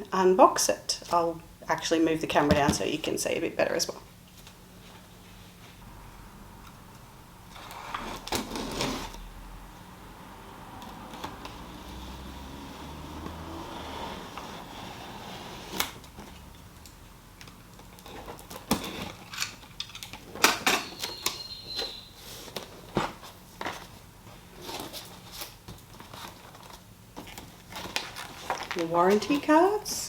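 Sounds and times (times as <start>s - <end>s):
cardboard packaging clicks and rustles: 15.6s - 29.5s
brief squeak: 20.8s - 22.2s.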